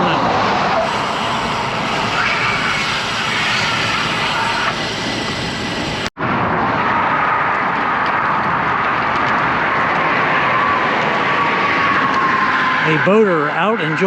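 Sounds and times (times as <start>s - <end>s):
passing traffic: 0.0s - 14.0s
road noise: 0.0s - 14.0s
wind rushing on microphone: 2.8s - 14.0s.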